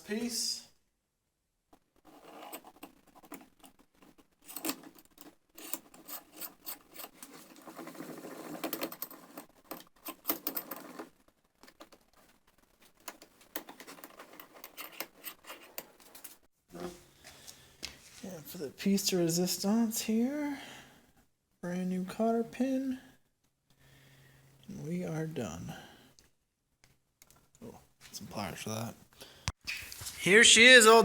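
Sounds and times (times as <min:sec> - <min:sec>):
small metal parts clicking: 0:02.2 - 0:11.9, 0:13.0 - 0:16.4.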